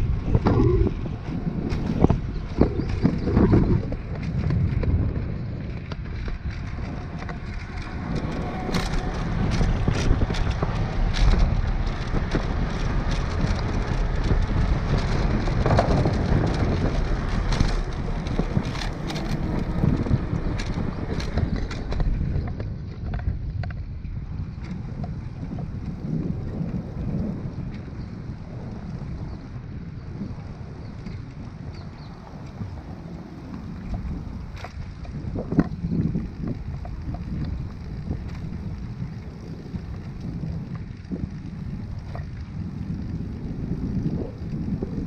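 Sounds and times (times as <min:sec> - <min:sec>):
road rumble: 0:00.0 - 0:45.0
wind buffeting microphone: 0:00.0 - 0:45.0
clicks and rattles: 0:05.7 - 0:23.8.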